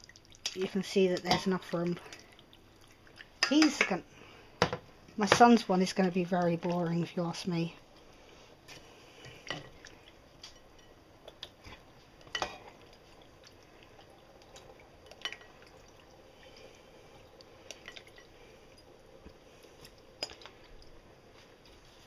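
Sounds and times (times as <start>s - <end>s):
faint steady background noise: 0.0s - 22.0s
spoon clinking and scraping a pan: 10.4s - 13.1s.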